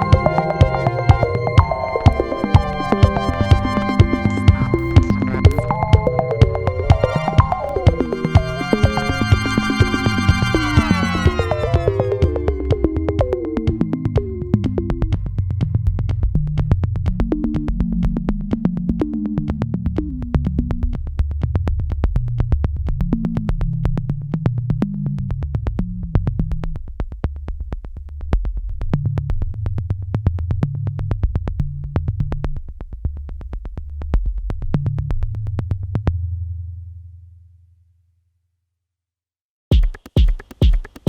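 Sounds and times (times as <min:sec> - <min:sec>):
drum-machine beat: 0:00.0 - 0:15.4, 0:39.7 - 0:41.0
low synthesizer notes: 0:00.0 - 0:20.4.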